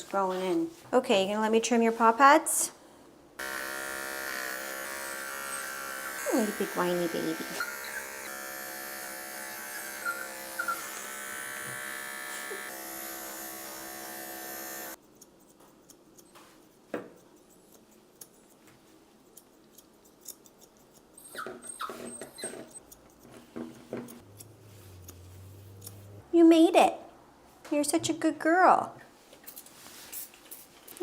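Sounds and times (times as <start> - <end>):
electric clippers buzzing: 3.4 - 15.0
puppy whining: 7.5 - 8.3, 10.0 - 11.1, 21.2 - 22.8.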